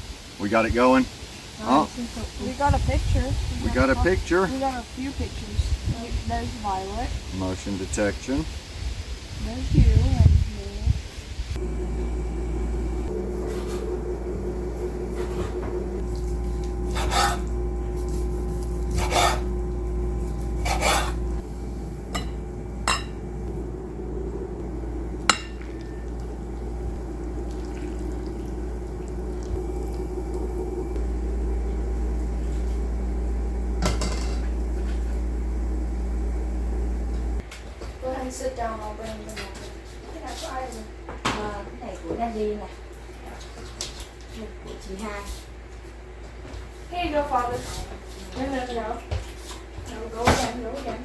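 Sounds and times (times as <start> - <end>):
steady low hum: 0.0 - 51.0
dishes and utensils clinking: 22.1 - 23.2, 33.8 - 34.5.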